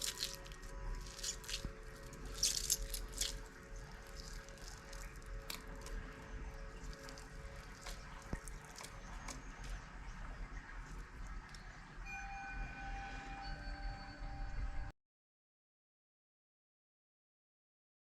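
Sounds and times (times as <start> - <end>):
slime squishing with wet clicks: 0.0 - 9.9.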